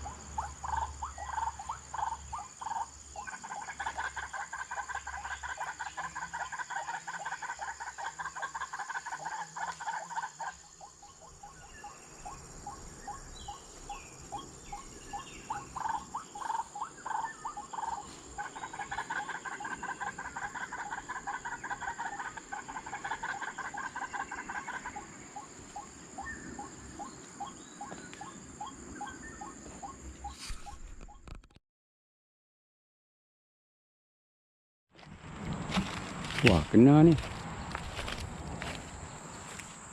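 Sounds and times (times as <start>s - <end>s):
bird harsh repeated calls: 0.0s - 31.2s.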